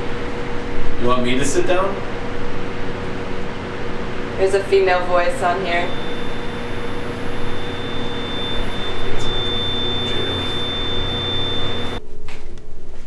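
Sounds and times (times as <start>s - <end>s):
steady high tone: 5.5s - 12.0s
loud radio static: 5.7s - 12.0s.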